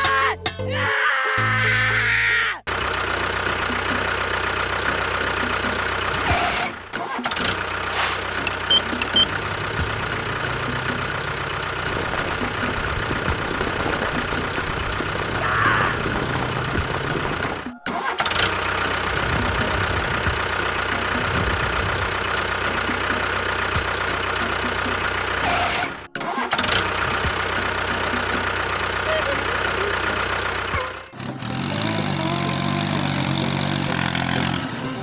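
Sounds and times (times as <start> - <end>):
music: 0.0 - 2.1, 3.1 - 35.0
engine running: 2.7 - 35.0.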